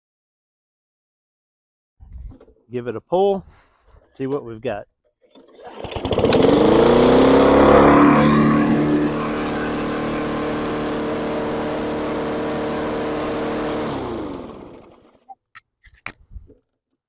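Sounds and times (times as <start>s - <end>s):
lawn mower engine running: 5.3s - 15.2s.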